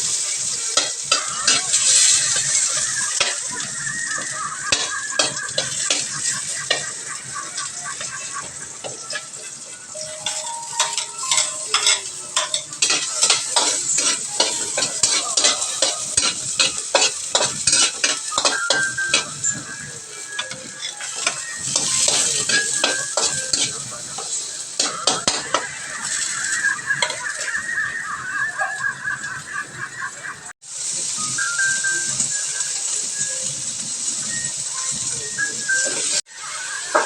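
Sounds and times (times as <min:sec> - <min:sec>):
food sizzling in a pan: 0:00.0 - 0:37.0
metal utensil scraping a pan: 0:00.2 - 0:27.4.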